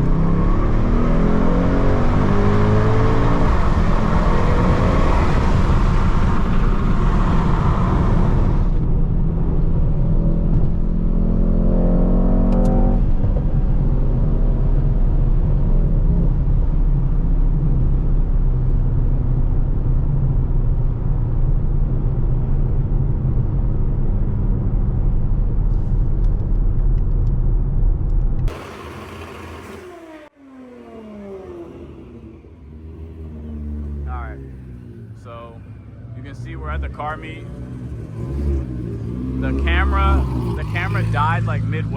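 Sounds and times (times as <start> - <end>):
engines revving: 0.0 - 15.1, 28.5 - 41.9
car engine accelerating: 0.0 - 41.9
heavy road noise: 0.0 - 41.9.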